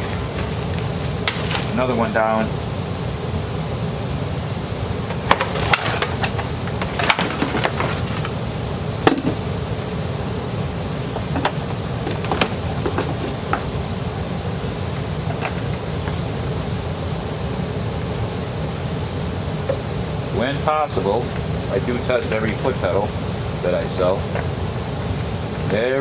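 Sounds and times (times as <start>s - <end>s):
steady low hum: 0.0s - 26.0s
knocks and clicks of handling: 11.1s - 13.7s.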